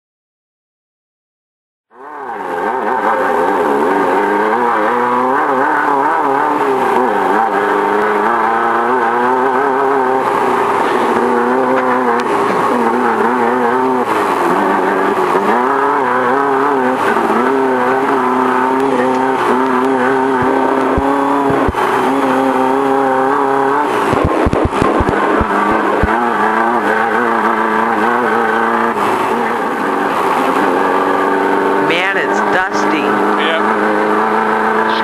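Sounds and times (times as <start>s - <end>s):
race car engine under load: 2.0s - 35.0s.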